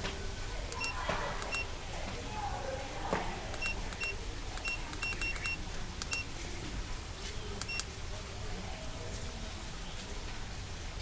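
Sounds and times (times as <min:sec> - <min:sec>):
high-pitched electronic beeps: 0:03.6 - 0:06.3.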